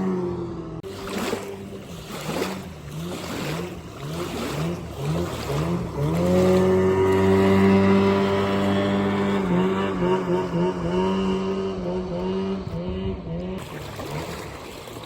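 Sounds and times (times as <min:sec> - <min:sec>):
outboard boat motor running: 0:00.0 - 0:15.0
water splashing: 0:00.8 - 0:10.8, 0:13.5 - 0:15.0.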